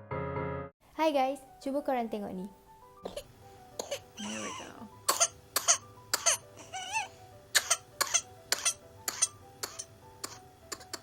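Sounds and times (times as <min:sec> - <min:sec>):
infant coughing: 0:03.0 - 0:11.0.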